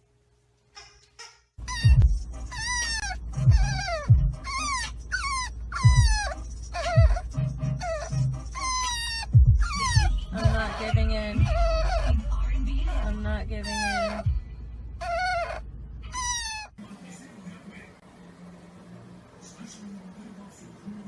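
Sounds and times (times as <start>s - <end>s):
dog whining: 1.6s - 14.4s, 15.0s - 16.8s
background music with bass thumps: 1.7s - 5.0s, 5.8s - 8.6s, 9.3s - 13.6s.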